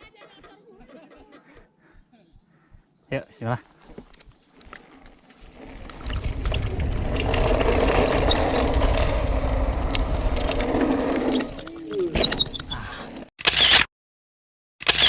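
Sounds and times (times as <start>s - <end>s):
wind: 0.0s - 13.9s
bike tyres rumbling on dirt: 3.9s - 11.6s
sharp clicks: 13.4s - 13.9s.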